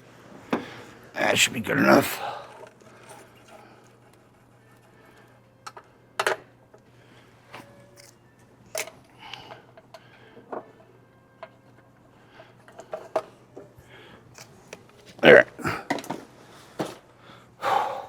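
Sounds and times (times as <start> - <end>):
tools and wiring parts clicking: 7.6 - 10.0.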